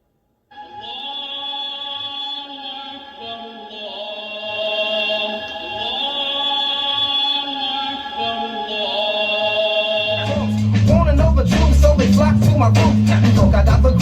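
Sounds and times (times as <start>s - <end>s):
choir-like vocal chords: 0.5s - 14.0s
hip hop track: 0.6s - 14.0s
soft low beat: 10.2s - 14.0s.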